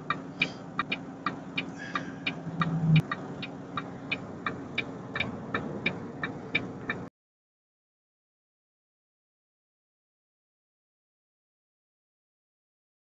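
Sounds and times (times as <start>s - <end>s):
sharp regular ticking: 0.0s - 7.1s
vehicle cab hum and road noise: 0.0s - 7.1s
short low buzz: 1.8s - 3.0s.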